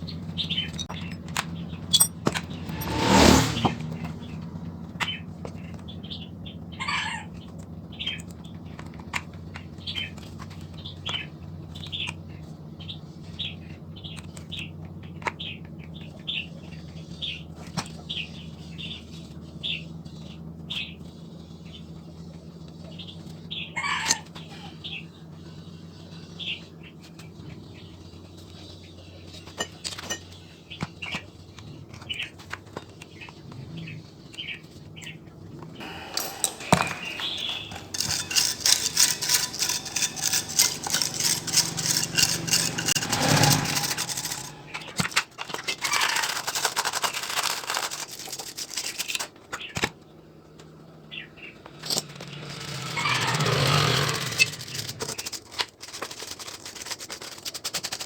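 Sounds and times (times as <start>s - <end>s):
rapid hand scraping strokes: 2.5s - 4.2s, 35.8s - 45.2s.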